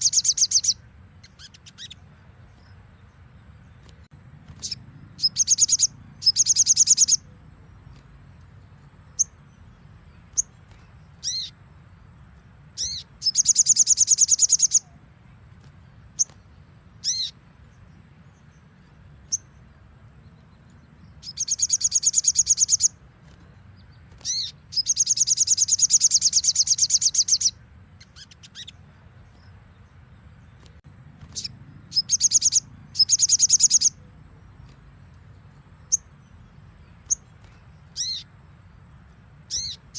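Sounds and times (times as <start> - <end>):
bird singing high trills: 0.0 - 2.8, 4.6 - 7.5, 9.1 - 11.6, 12.8 - 15.0, 15.9 - 17.4, 20.3 - 23.0, 23.8 - 29.5, 31.3 - 34.8, 35.8 - 38.5, 39.5 - 39.9.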